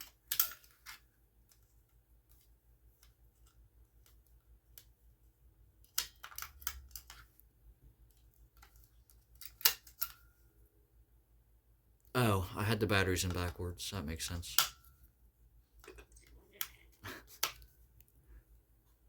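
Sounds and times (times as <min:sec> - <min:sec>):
plastic clicks and rattles: 0:05.8 - 0:07.4.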